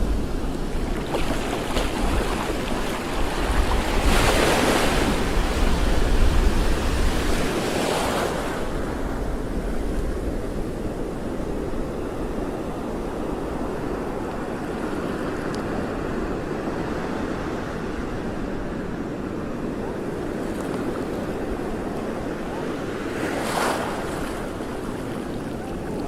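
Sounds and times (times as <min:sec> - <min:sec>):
rush of water: 0:00.0 - 0:09.6
wind buffeting microphone: 0:00.0 - 0:26.0.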